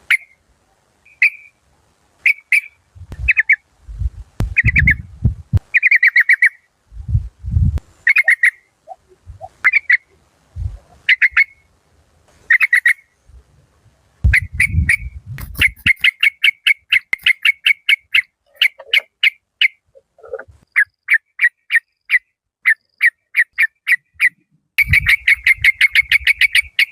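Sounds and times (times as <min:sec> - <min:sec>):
bird calling: 0:00.0 - 0:00.4, 0:01.1 - 0:01.6, 0:02.2 - 0:03.7, 0:04.5 - 0:05.1, 0:05.7 - 0:06.7, 0:07.9 - 0:10.2, 0:10.8 - 0:11.7, 0:12.5 - 0:13.2, 0:14.3 - 0:26.9
dull low thumps: 0:03.0 - 0:05.7, 0:06.9 - 0:07.9, 0:10.5 - 0:11.0, 0:13.3 - 0:15.9.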